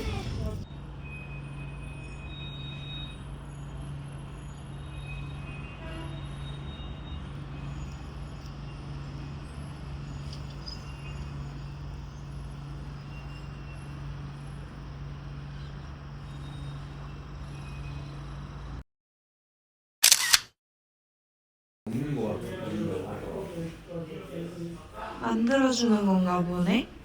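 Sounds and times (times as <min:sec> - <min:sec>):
low drone with rushing noise: 0:00.0 - 0:02.4.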